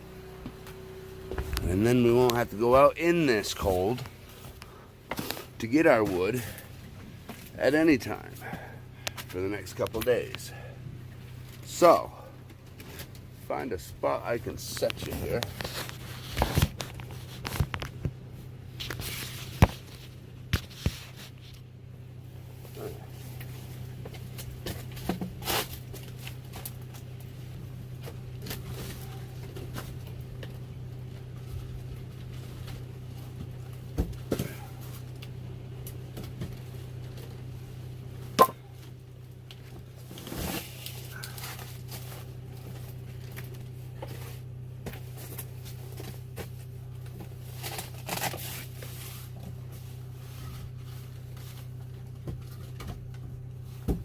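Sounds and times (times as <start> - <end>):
steady low hum: 0.0 - 54.0
knocks and scrapes of logs: 14.5 - 21.7.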